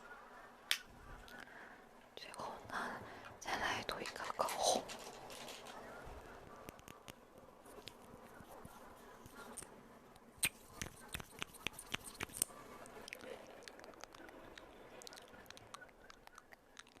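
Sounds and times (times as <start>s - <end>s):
soft asmr clicks: 9.2s - 17.0s.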